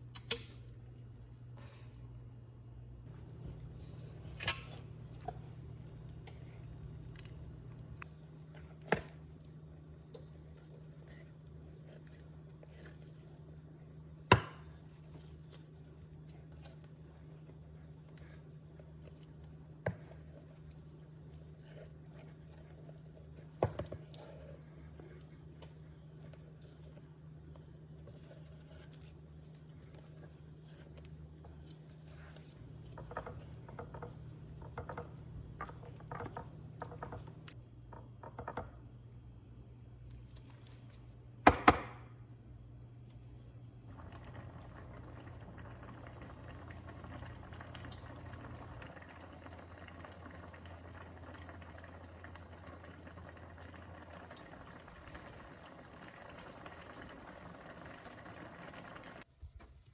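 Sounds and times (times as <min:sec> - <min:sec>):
steady low hum: 0:00.0 - 0:14.1, 0:16.2 - 0:38.0
spoon scraping a pan: 0:32.0 - 0:37.5.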